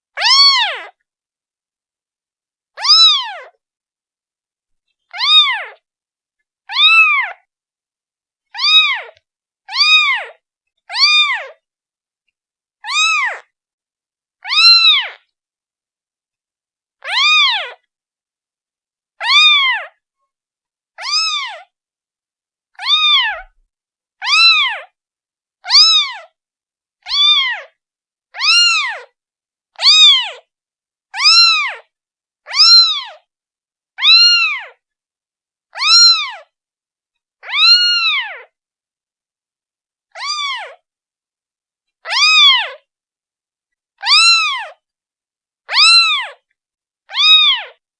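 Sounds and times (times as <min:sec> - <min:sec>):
kitten meowing: 0:00.2 - 0:01.0, 0:02.8 - 0:03.6, 0:05.1 - 0:05.8, 0:06.7 - 0:07.5, 0:08.5 - 0:11.6, 0:12.8 - 0:13.5, 0:14.4 - 0:15.2, 0:17.0 - 0:17.8, 0:19.2 - 0:20.0, 0:21.0 - 0:21.7, 0:22.8 - 0:23.6, 0:24.2 - 0:24.9, 0:25.6 - 0:26.3, 0:27.0 - 0:29.1, 0:29.8 - 0:30.4, 0:31.1 - 0:33.3, 0:34.0 - 0:34.8, 0:35.7 - 0:36.5, 0:37.4 - 0:38.5, 0:40.1 - 0:40.8, 0:42.0 - 0:42.8, 0:44.0 - 0:44.8, 0:45.7 - 0:46.4, 0:47.1 - 0:47.8.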